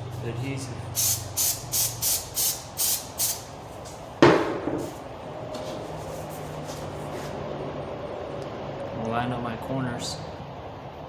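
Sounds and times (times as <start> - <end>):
aerosol can hissing: 1.0 - 3.4.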